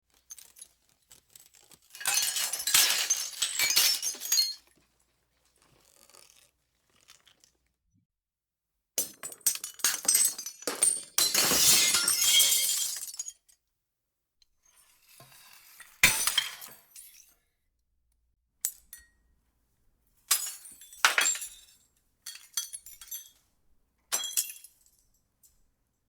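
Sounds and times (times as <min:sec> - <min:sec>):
glass clinking and cracking: 0:00.2 - 0:04.7, 0:09.0 - 0:13.4, 0:20.3 - 0:23.4, 0:24.1 - 0:25.0
glass shattering: 0:02.0 - 0:04.6, 0:09.0 - 0:13.4.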